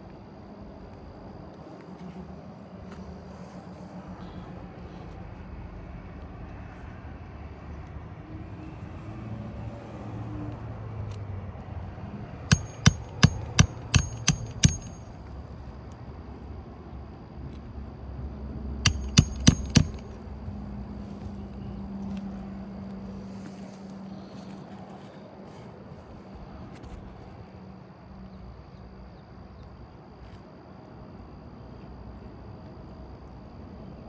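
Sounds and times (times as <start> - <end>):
low background hum: 12.2 - 34.0
hammer blows with metallic ring: 12.5 - 15.3, 18.9 - 20.3.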